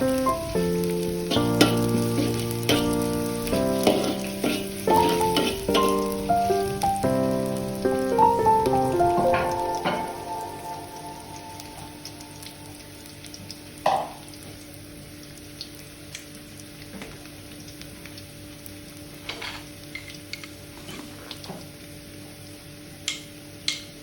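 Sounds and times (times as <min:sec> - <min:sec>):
food sizzling in a pan: 0:00.0 - 0:24.0.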